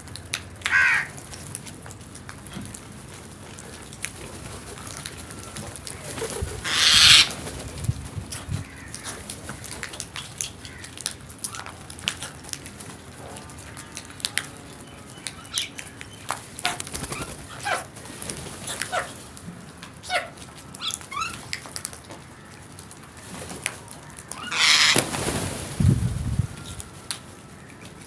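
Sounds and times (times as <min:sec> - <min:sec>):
crows cawing: 0:00.7 - 0:01.2, 0:06.6 - 0:07.4, 0:10.6 - 0:11.1, 0:24.1 - 0:25.0.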